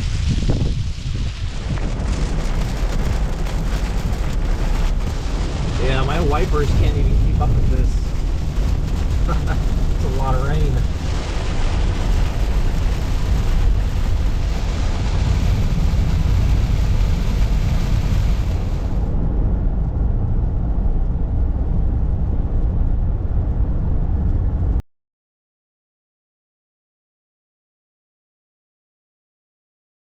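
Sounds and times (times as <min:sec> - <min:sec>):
heavy rain on car windshield: 0:00.0 - 0:19.1
low road rumble: 0:00.0 - 0:24.8.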